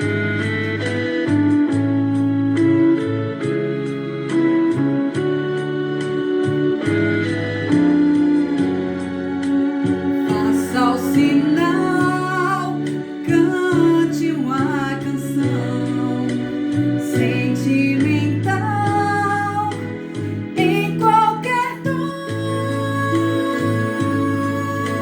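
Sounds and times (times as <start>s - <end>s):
keyboard and guitar backing track: 0.0s - 25.0s
person singing: 8.5s - 25.0s.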